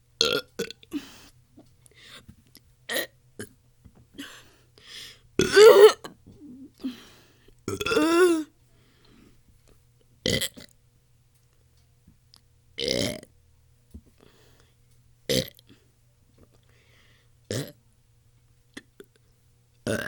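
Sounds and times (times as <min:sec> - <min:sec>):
person burping: 0:00.2 - 0:01.0, 0:02.9 - 0:03.1, 0:05.4 - 0:07.0, 0:07.7 - 0:08.5, 0:10.3 - 0:10.7, 0:12.8 - 0:13.3, 0:15.3 - 0:15.6, 0:17.5 - 0:17.8.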